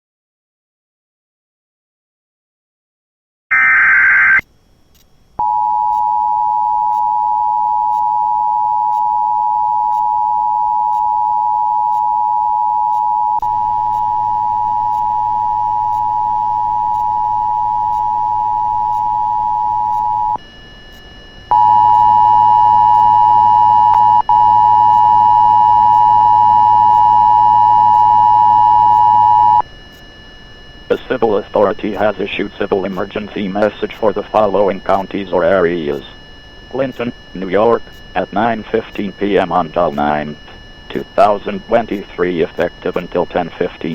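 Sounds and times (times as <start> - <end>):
two-tone attention signal: 3.5 - 4.4, 21.5 - 29.6
warbling data burst: 3.5 - 4.4
low hum: 3.6 - 43.9.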